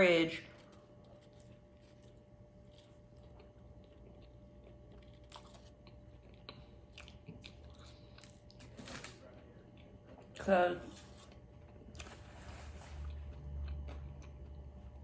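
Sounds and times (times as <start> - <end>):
chewing and biting: 0.8 - 10.3, 13.0 - 15.0.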